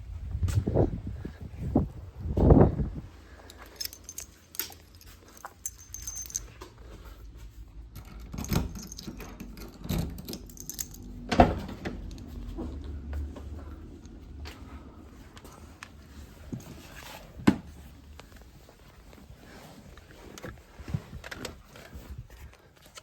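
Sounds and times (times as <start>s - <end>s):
metallic jingling and clicking: 3.3s - 12.8s.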